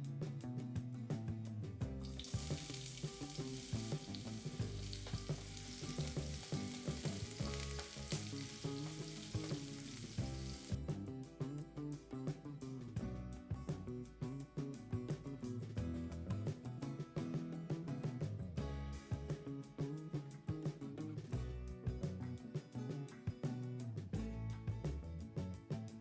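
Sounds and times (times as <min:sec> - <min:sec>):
soft background music: 0:00.0 - 0:26.0
food sizzling in oil: 0:02.0 - 0:10.8.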